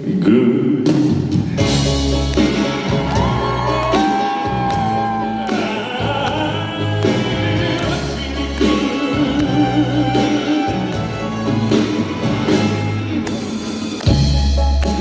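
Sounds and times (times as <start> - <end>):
live band music: 0.0 - 15.0.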